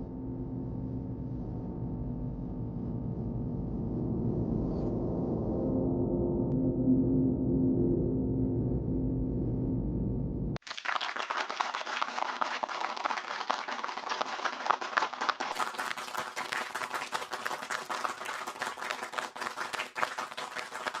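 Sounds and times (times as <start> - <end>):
many hands clapping: 10.6 - 21.0.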